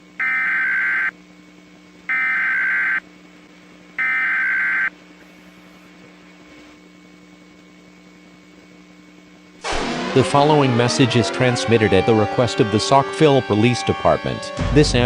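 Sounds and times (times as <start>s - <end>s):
faint steady hum: 0.0s - 14.8s
buzzing digital data tones: 0.2s - 1.2s, 2.1s - 3.0s, 4.0s - 5.9s.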